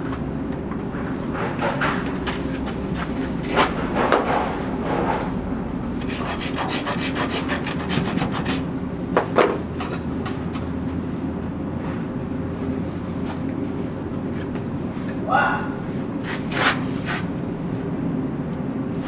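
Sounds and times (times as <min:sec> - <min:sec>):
steady low hum: 0:00.0 - 0:19.0
tools rasping horse hoof: 0:06.0 - 0:08.8.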